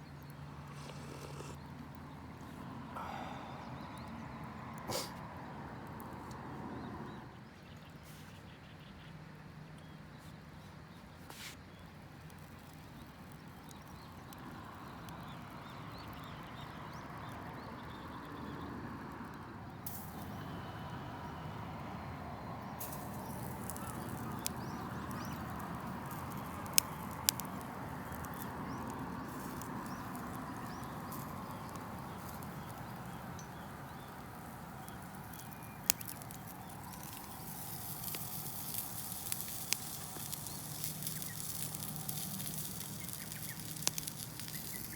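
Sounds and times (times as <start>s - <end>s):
campfire hissing: 0.5s - 1.6s, 3.0s - 4.2s, 4.8s - 5.1s, 11.7s - 18.1s, 19.7s - 44.9s
fire crackles: 11.7s - 44.9s.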